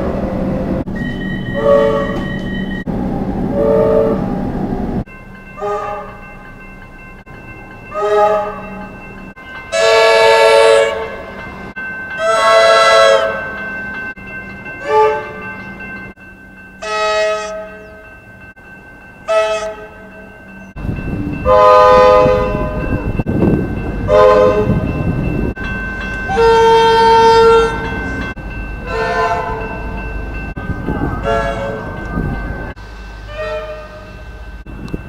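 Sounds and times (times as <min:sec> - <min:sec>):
low rumble of running train: 0:00.0 - 0:35.0
train horn short blasts: 0:01.6 - 0:02.4, 0:03.5 - 0:04.4, 0:05.6 - 0:06.2, 0:09.8 - 0:11.2, 0:16.8 - 0:18.0, 0:21.4 - 0:22.8, 0:24.1 - 0:24.8, 0:26.3 - 0:27.8, 0:28.9 - 0:29.6, 0:30.8 - 0:31.9, 0:33.2 - 0:34.2.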